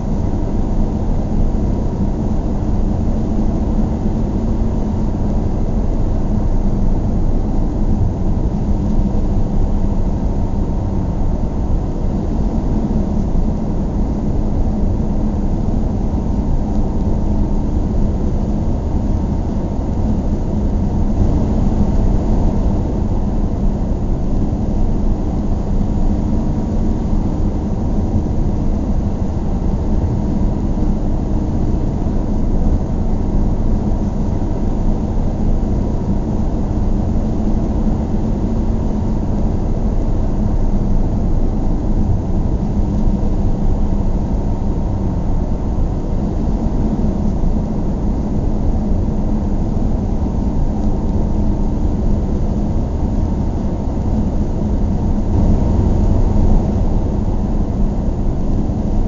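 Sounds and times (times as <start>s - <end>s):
car engine and road noise: 54.4s - 59.0s.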